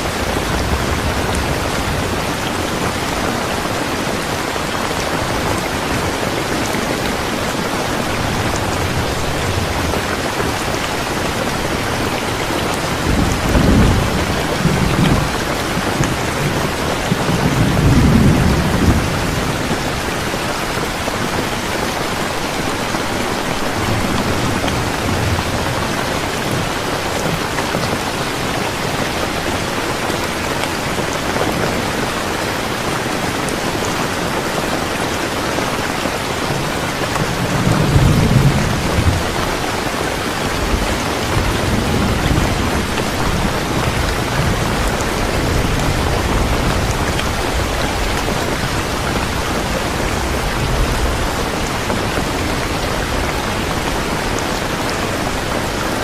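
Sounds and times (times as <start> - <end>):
low rumbles of thunder: 0.0 - 3.8, 8.2 - 20.1, 37.0 - 39.9
heavy rain hiss: 0.0 - 56.0.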